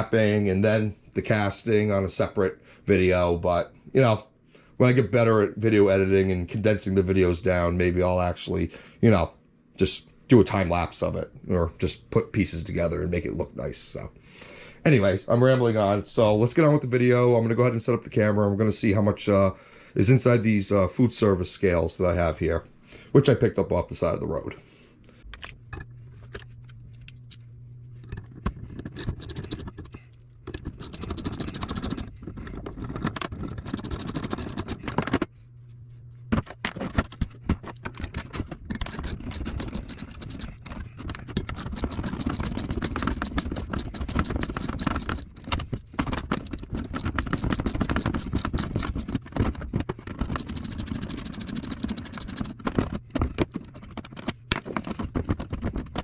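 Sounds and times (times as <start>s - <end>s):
metal parts clattering: 28.8s - 35.0s, 37.6s - 49.2s, 50.1s - 52.6s.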